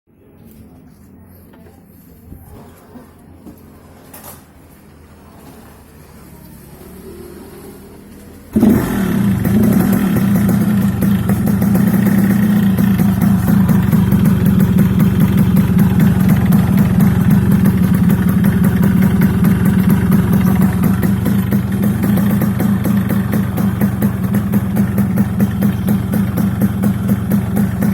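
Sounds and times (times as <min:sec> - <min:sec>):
two-stroke motorcycle engine running: 0:08.5 - 0:27.9.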